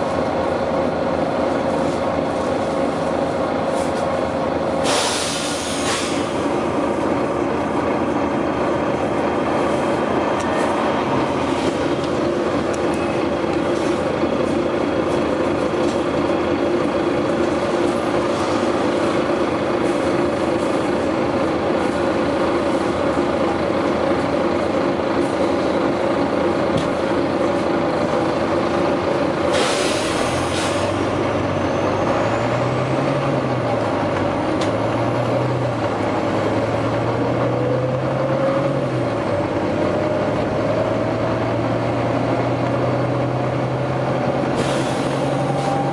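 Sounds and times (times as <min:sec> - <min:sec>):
bus engine droning: 0:00.0 - 0:45.9
air brake hisses: 0:04.8 - 0:06.4, 0:29.5 - 0:30.9, 0:44.6 - 0:45.7.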